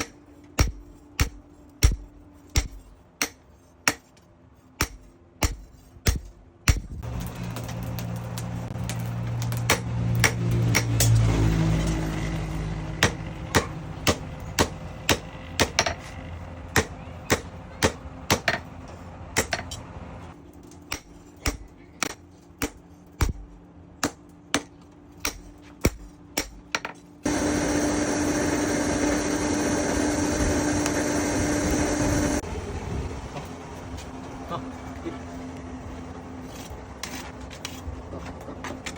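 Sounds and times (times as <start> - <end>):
hammer striking steel on anvil: 0.0 - 4.2, 4.8 - 8.0, 8.8 - 12.1, 13.0 - 16.1, 16.7 - 18.7, 19.4 - 19.8, 20.9 - 26.9
machine whir: 27.2 - 32.5.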